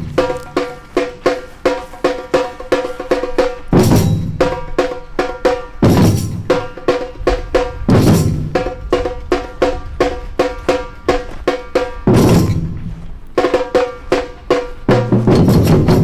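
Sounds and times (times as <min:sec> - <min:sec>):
drum kit beat: 0:00.0 - 0:16.0
cymbal crash with bass drum: 0:03.7 - 0:04.7, 0:12.0 - 0:12.8.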